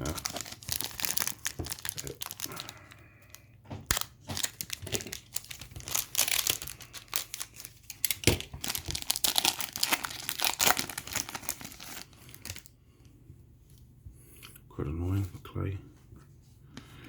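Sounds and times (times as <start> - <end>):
plastic wrapper crinkling: 0.0 - 12.7.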